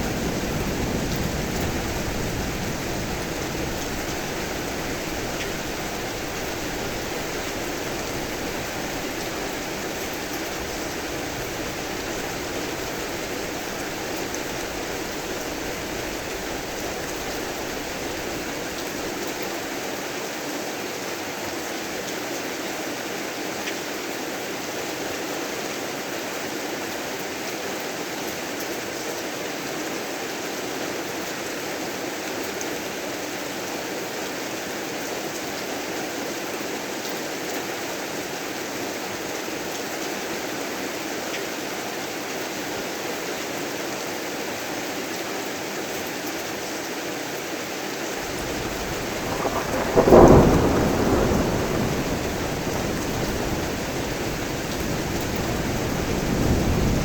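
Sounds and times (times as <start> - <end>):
heavy rain: 0.0 - 29.4, 30.6 - 57.0.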